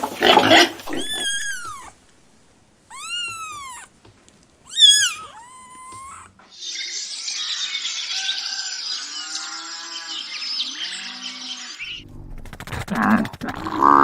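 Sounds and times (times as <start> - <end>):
cat meowing: 0.8 - 2.0, 2.9 - 4.0, 4.6 - 6.4
small birds chirping: 4.7 - 12.0.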